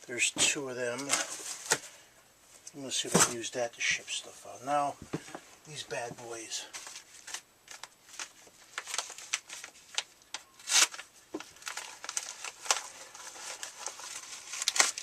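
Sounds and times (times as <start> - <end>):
packing material crinkling: 6.6 - 15.0.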